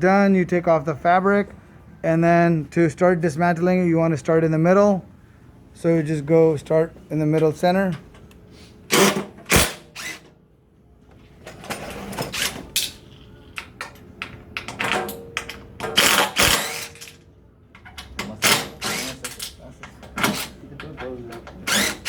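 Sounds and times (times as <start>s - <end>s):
tool and metal parts clicking: 12.2s - 17.2s, 17.8s - 19.6s, 20.2s - 22.0s.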